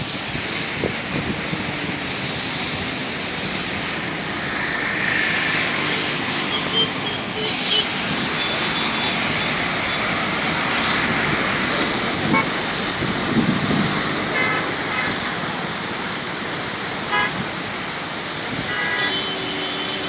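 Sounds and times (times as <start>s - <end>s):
river rushing: 0.0s - 20.0s
vehicle horn toots: 17.1s - 17.4s.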